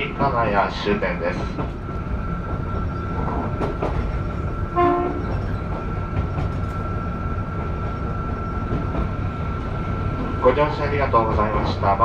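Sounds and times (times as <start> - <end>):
train rumbling on rails: 0.0 - 12.0
train horn blast: 4.7 - 5.3.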